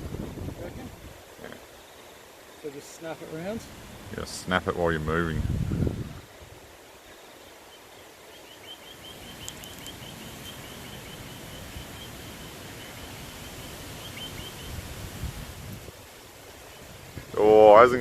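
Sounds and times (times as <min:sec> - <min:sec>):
wind-like outdoor noise: 0:00.0 - 0:18.0
small bird chirping: 0:07.0 - 0:14.8.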